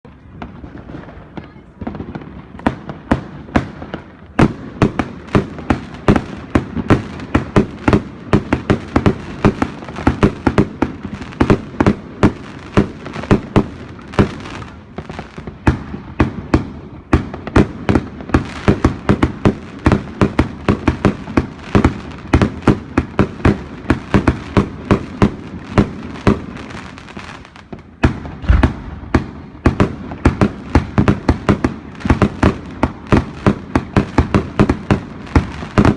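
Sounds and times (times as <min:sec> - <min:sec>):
firework barrage cracks and bangs: 0:00.1 - 0:35.9
heavy firework thump: 0:28.4 - 0:29.8.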